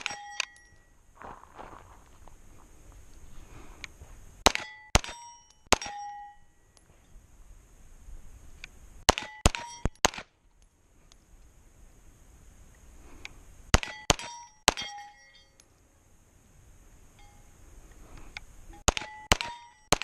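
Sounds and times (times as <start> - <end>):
steel targets ringing: 0.0 - 1.0, 4.6 - 6.8, 9.2 - 10.0, 13.8 - 15.8, 17.2 - 17.6
pistol shots: 9.1 - 10.3, 13.7 - 15.0, 18.9 - 20.0.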